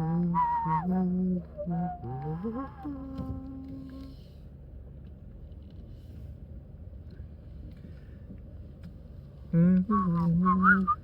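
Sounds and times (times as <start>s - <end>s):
man humming a melody: 0.0s - 4.0s, 9.6s - 11.0s
low background rumble: 0.0s - 11.0s.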